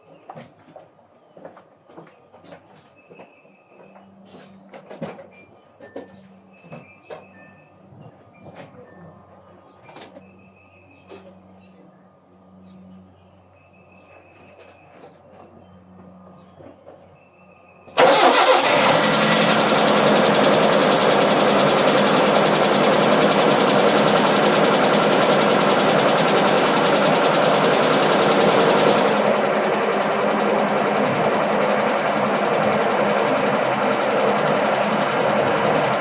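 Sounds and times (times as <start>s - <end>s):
pickup engine starting and running: 18.0s - 36.0s.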